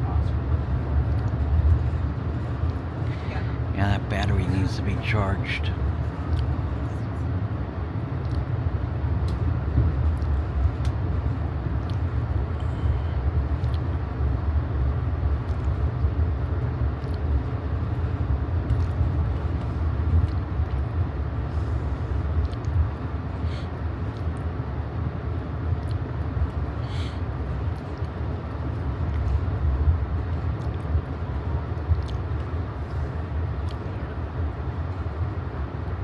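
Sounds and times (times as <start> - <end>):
train coach rumbling on track: 0.0 - 36.0.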